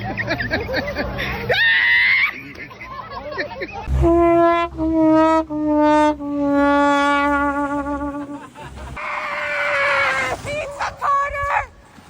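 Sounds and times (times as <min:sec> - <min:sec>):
sad trombone sound effect: 0:03.9 - 0:08.4
harsh rasping high cry: 0:09.0 - 0:11.7.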